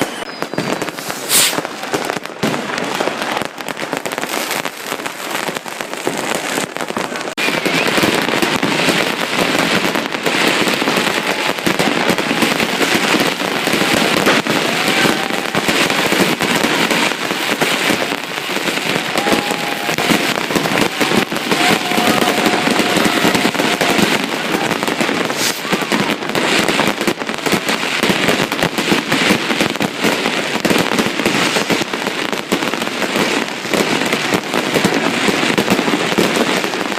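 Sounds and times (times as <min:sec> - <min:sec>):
thin whistle: 0:00.0 - 0:01.4
fireworks and firecrackers bangs: 0:00.0 - 0:36.9.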